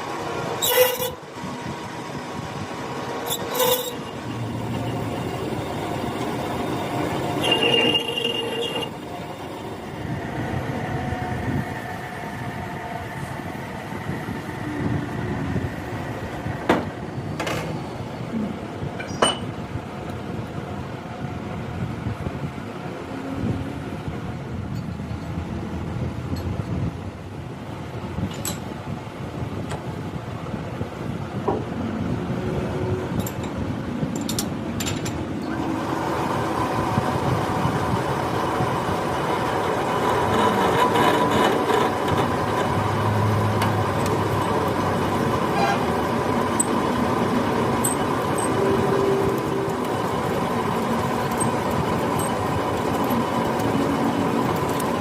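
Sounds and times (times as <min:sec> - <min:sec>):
machine running: 0:00.0 - 0:18.2, 0:35.4 - 0:55.0.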